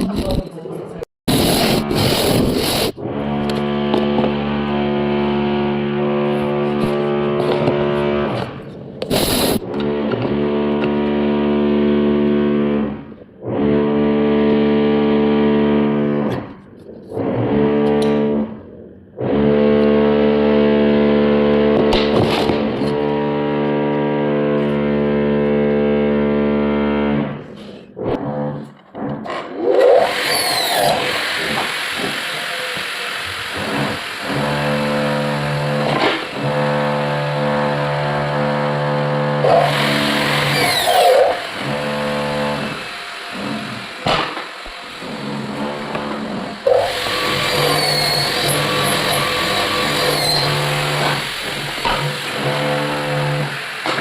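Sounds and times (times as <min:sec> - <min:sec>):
distorted electric guitar chords: 0:01.3 - 0:54.0
motor whining and humming: 0:19.3 - 0:54.0.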